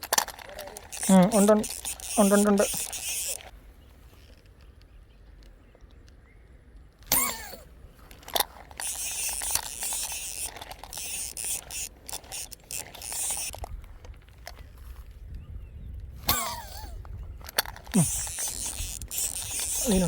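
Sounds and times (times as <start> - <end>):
fishing reel ratchet clicking: 0.0 - 3.5, 8.1 - 13.8, 17.5 - 20.0.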